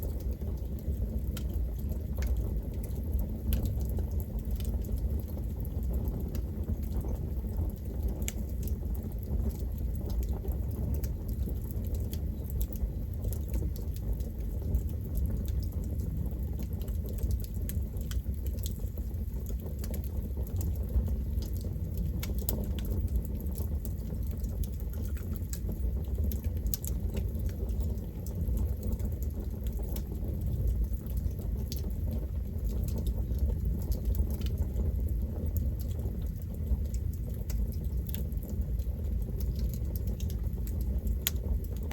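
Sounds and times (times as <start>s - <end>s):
burning wood crackling and popping: 0.0s - 41.9s
rush of flames: 0.0s - 41.9s.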